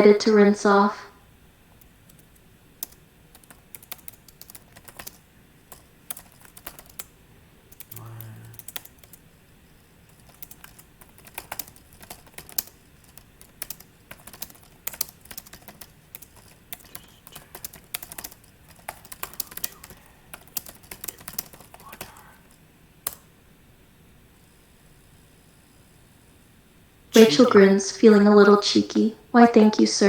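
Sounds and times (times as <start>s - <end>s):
computer keyboard typing: 1.7s - 23.3s.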